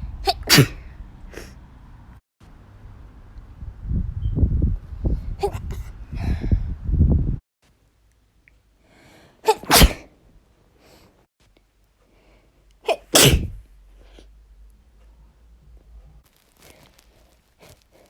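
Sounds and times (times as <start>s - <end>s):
woman sneezing: 0.3s - 0.8s, 9.4s - 10.1s, 12.9s - 13.6s.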